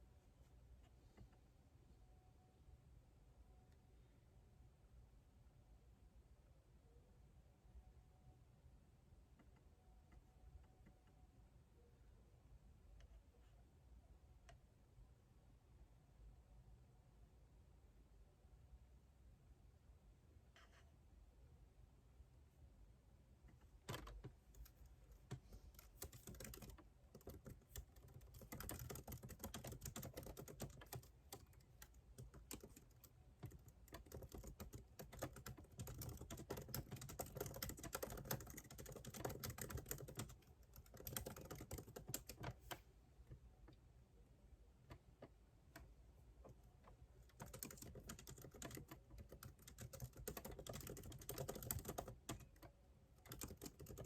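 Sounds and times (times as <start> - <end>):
computer keyboard typing: 23.9 - 42.8, 47.2 - 54.0.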